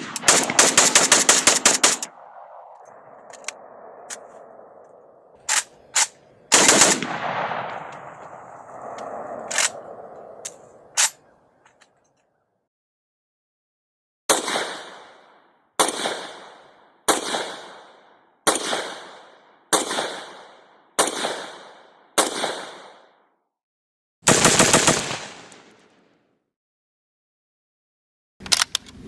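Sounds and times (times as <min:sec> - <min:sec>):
automatic gunfire burst: 0:00.0 - 0:02.1, 0:06.5 - 0:07.8, 0:24.3 - 0:25.7
gunshots with echo: 0:00.0 - 0:03.6, 0:05.4 - 0:10.1.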